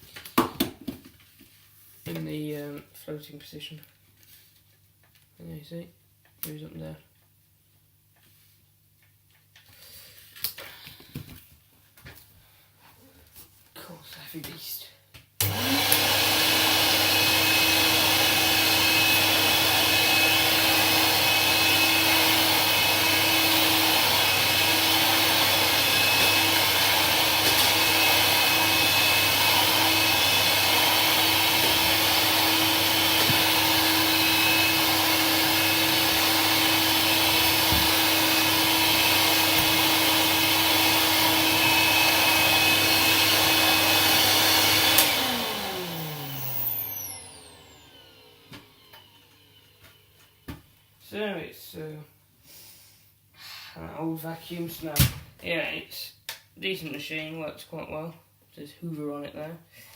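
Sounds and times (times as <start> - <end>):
vacuum cleaner running: 15.4 - 50.6.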